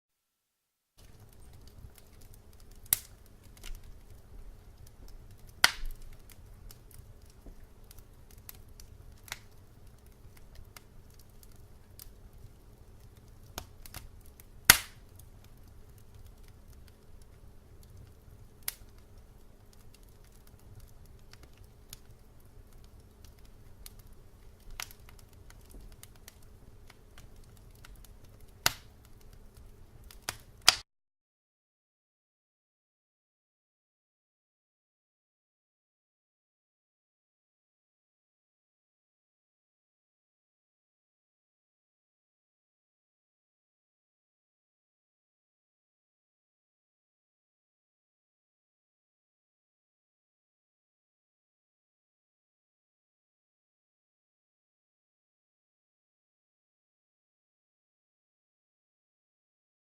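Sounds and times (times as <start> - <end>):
fire crackling with pops: 1.0 - 30.8.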